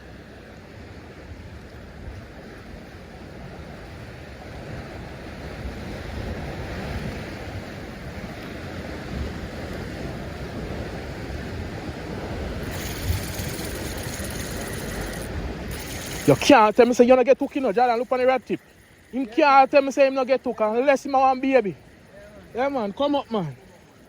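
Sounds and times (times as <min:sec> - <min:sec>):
sea surf on rocky shore: 0:00.0 - 0:24.0
bright hiss: 0:12.6 - 0:23.6.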